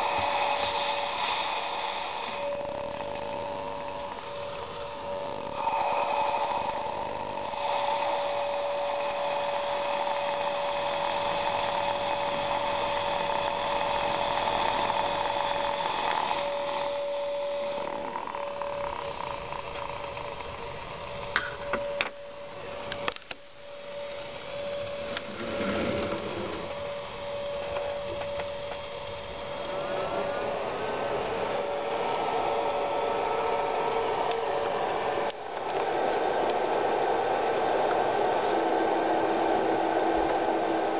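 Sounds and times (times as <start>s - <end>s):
hiss: 0.0s - 2.7s, 4.3s - 17.9s, 38.4s - 40.9s
water heater coil buzzing: 0.0s - 40.9s.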